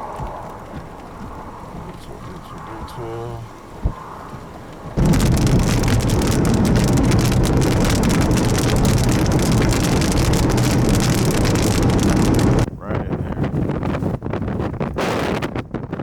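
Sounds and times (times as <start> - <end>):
low rumble: 0.0 - 12.7
heavy precipitation pounding vehicle roof: 3.6 - 12.7.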